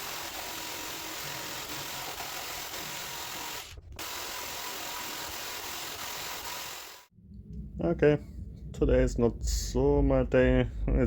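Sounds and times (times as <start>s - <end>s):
power tool cutting wood: 0.0s - 7.1s.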